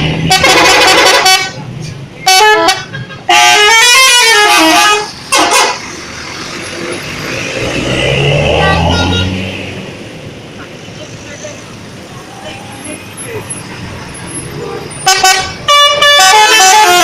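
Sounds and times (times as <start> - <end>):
heavy vehicle engine: 0.0 - 17.0
bus horn playing a tune: 0.2 - 1.6, 2.2 - 5.9, 14.6 - 17.0.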